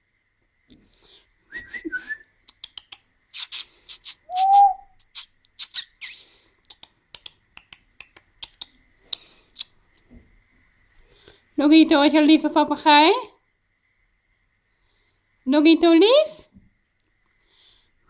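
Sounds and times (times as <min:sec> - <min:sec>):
parrot clicks and chirps: 0:02.4 - 0:09.7
parrot whistle rising and falling: 0:04.2 - 0:05.2.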